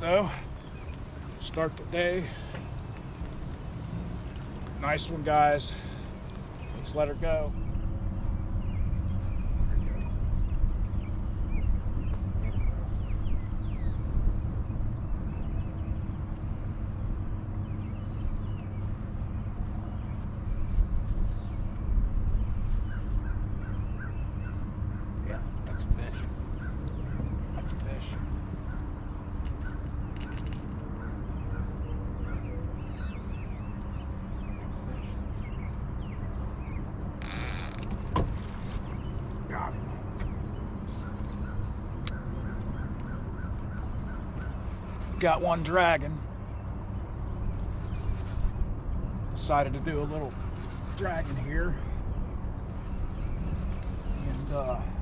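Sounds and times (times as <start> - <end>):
steady low rumble: 0.0 - 37.2
birds chirping: 0.0 - 55.0.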